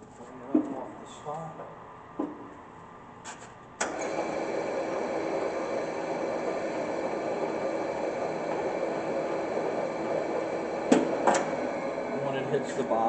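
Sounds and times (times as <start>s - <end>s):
band saw whirring: 3.8s - 13.0s.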